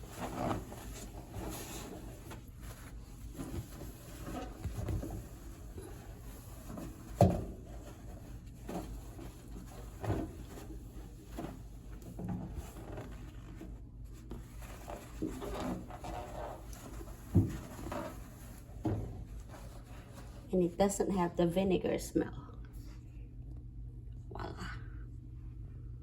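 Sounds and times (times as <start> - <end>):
rubbing and shuffling: 0.0 - 20.6.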